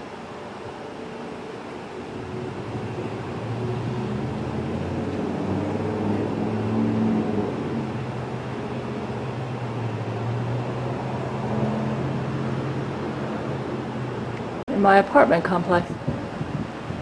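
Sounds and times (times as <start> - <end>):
steady pitched tones: 0.0 - 17.0
low engine hum: 2.2 - 14.7.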